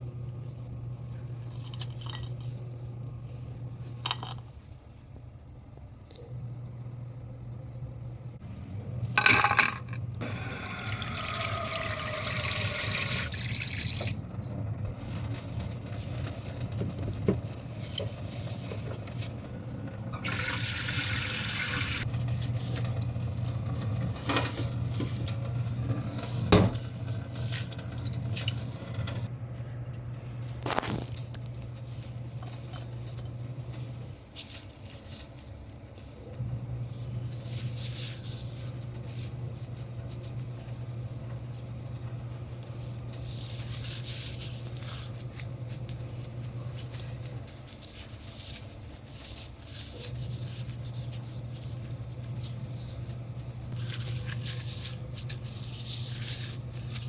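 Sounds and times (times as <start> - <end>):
water running: 10.2 - 14.4, 20.2 - 22.1.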